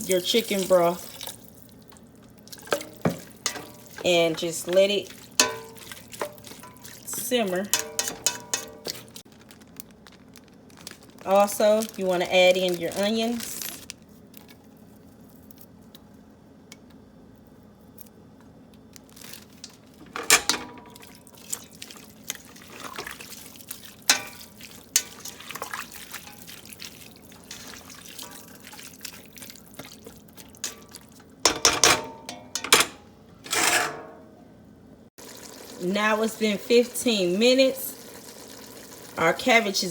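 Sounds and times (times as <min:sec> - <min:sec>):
pot simmering: 0:00.0 - 0:13.8, 0:20.9 - 0:31.4, 0:35.2 - 0:39.9
wet stirring: 0:00.0 - 0:16.1, 0:20.7 - 0:31.6
utensil clinking against pot: 0:02.6 - 0:09.1, 0:30.4 - 0:34.2.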